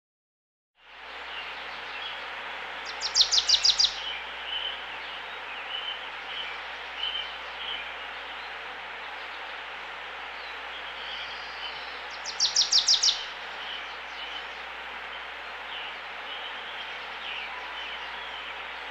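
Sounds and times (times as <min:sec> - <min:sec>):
brook running: 0:00.9 - 0:18.9
birds singing: 0:01.1 - 0:18.9
bird trilling: 0:03.0 - 0:04.1, 0:12.2 - 0:13.3.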